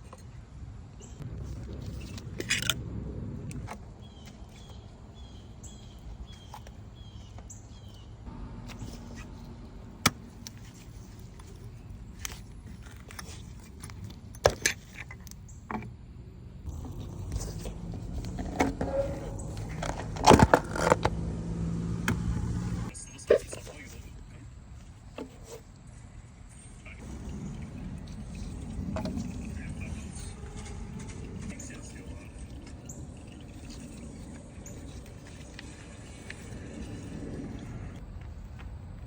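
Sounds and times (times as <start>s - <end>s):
low steady rumble: 1.0s - 4.2s, 8.2s - 13.1s, 16.0s - 22.9s, 27.0s - 39.0s.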